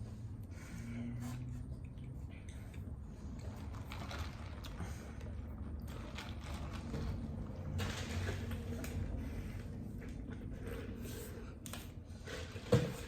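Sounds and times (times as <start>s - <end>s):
people chewing: 0.4s - 7.5s.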